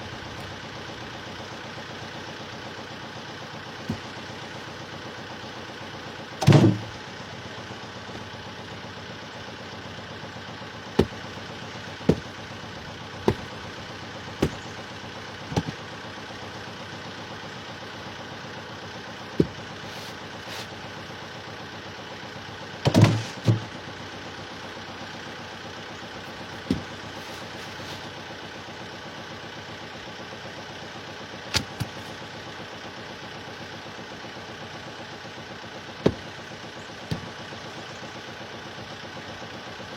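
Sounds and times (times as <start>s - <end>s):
motor hum: 0.0s - 28.8s, 30.4s - 33.0s, 33.8s - 39.9s
loud thumps: 6.4s - 6.9s.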